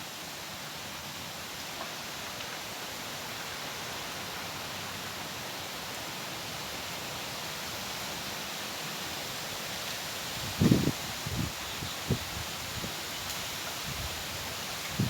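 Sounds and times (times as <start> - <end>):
wind blowing: 10.4 - 12.9.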